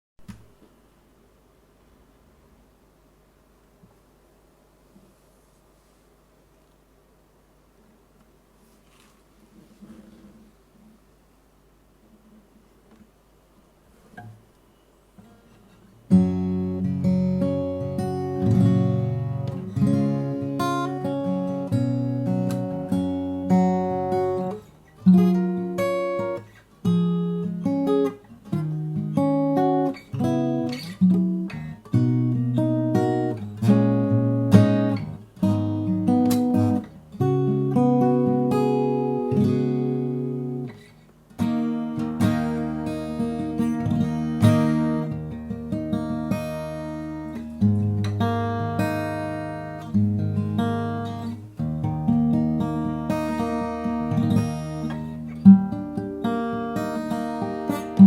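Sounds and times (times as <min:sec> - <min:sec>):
acoustic guitar chords ringing: 0:14.2 - 0:58.0
picked guitar notes: 0:15.3 - 0:58.0.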